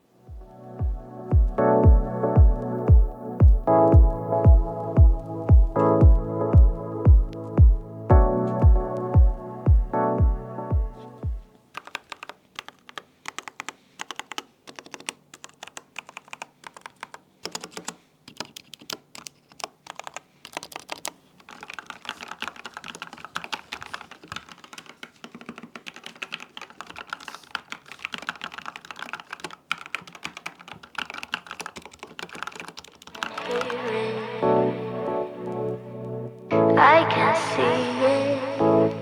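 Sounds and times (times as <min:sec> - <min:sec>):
typing on mechanical keyboard: 0:11.6 - 0:34.1.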